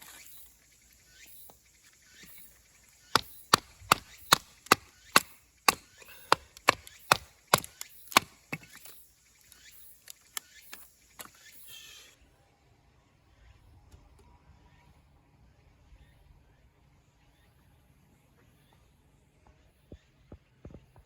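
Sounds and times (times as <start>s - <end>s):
chopping wood: 3.1s - 9.0s.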